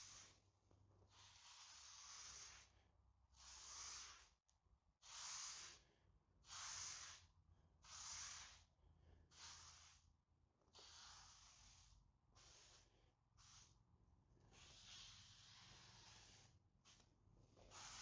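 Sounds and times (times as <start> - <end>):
brush strokes hissing on wood: 0.0 - 0.4, 1.1 - 4.4, 5.0 - 10.1, 10.7 - 13.8, 14.5 - 17.0, 17.6 - 18.0.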